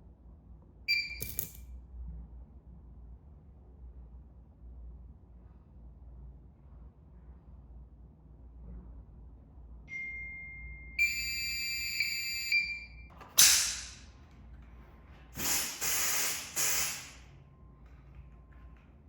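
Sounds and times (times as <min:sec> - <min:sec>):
fire alarm high-pitched tone: 0:09.9 - 0:13.1
short bursts of hiss: 0:13.4 - 0:14.0, 0:15.4 - 0:17.2.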